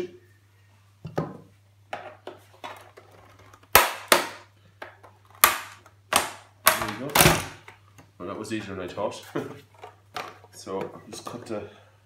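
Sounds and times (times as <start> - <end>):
plastic clips snapping loose: 5.3 - 7.8.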